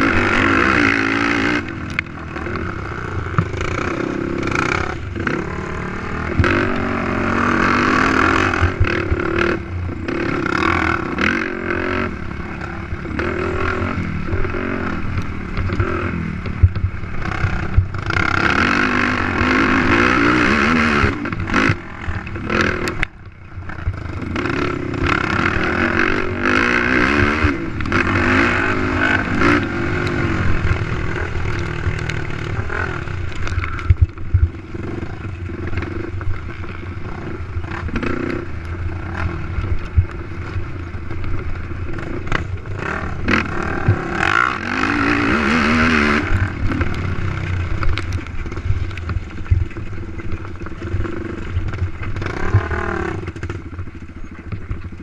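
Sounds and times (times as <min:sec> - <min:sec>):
quad bike engine revving: 0:00.0 - 0:55.0
quad clattering over bumps: 0:00.0 - 0:55.0.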